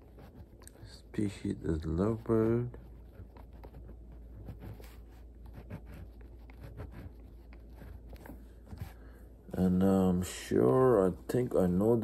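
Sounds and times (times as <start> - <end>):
pen scratching on paper: 0.0 - 9.0.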